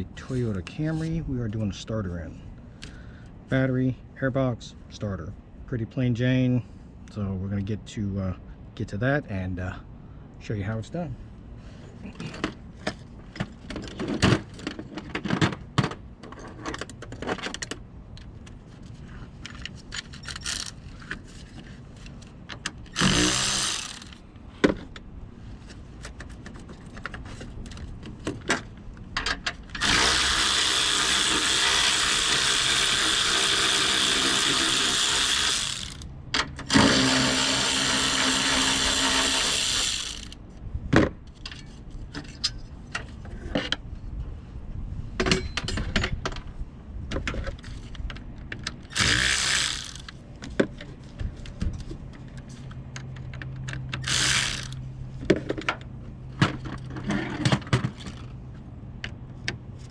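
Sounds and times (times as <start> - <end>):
tool clicks and clanks: 19.4 - 25.0, 26.0 - 40.4, 47.2 - 50.9, 51.8 - 58.3
power tool motor running: 23.0 - 24.2, 29.8 - 40.4, 48.9 - 50.1, 54.0 - 54.8.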